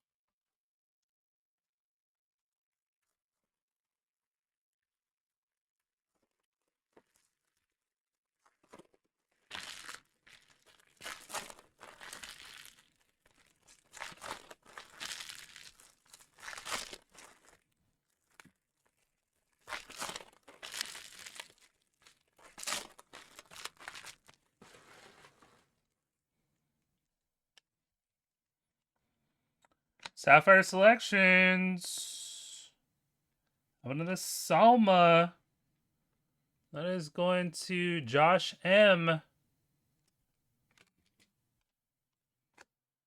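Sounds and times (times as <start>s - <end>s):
card pack wrappers tearing and crinkling: 8.4s - 25.5s.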